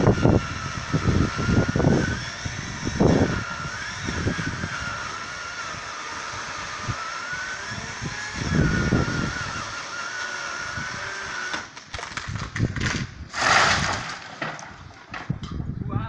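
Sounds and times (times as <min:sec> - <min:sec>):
two-stroke chainsaw running: 0:00.0 - 0:13.0
cracks and knocks: 0:11.5 - 0:15.6.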